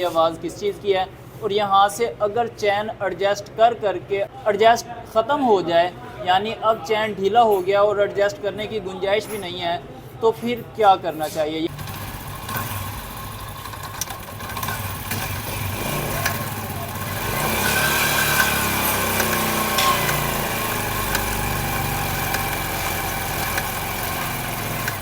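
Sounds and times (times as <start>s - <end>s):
drive chain ticking: 11.7s - 25.0s
motorcycle engine running: 11.7s - 25.0s.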